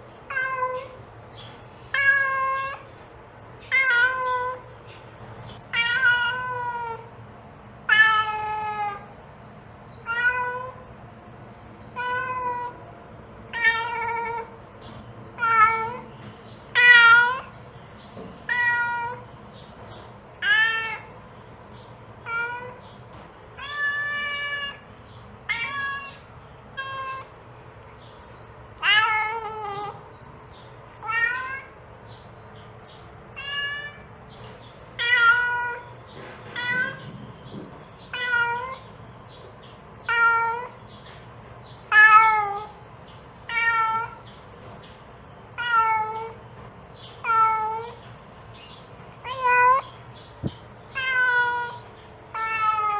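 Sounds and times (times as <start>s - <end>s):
cat meowing: 0.3s - 1.0s, 1.9s - 2.9s, 3.7s - 4.7s, 5.6s - 7.1s, 7.8s - 9.1s, 9.9s - 10.9s, 11.8s - 12.8s, 13.5s - 14.6s, 15.3s - 16.1s, 16.7s - 17.6s, 18.4s - 19.3s, 20.4s - 21.2s, 22.2s - 22.8s, 23.6s - 27.4s, 28.8s - 30.1s, 31.0s - 31.8s, 33.3s - 34.1s, 34.9s - 37.2s, 38.0s - 38.9s, 40.0s - 40.8s, 41.9s - 42.8s, 43.4s - 44.3s, 45.5s - 46.4s, 47.2s - 48.0s, 49.2s - 49.9s, 50.9s - 52.9s.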